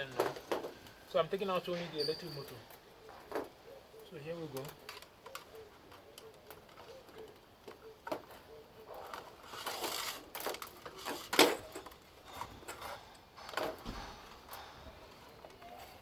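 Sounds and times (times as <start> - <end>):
plastic parts clicking: 9.0 - 12.0.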